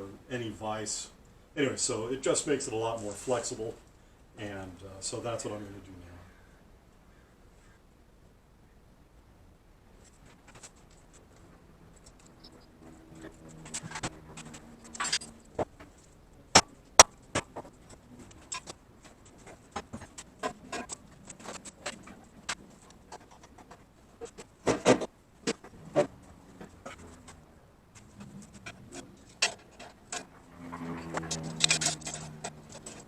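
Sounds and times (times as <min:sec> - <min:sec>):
metal tools clinking on workbench: 0:13.9 - 0:15.4.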